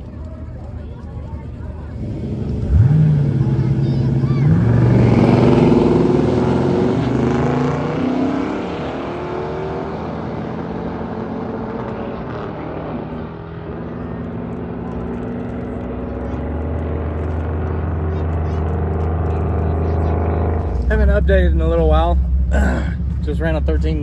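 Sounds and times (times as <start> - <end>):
car engine running: 0.0 - 24.0.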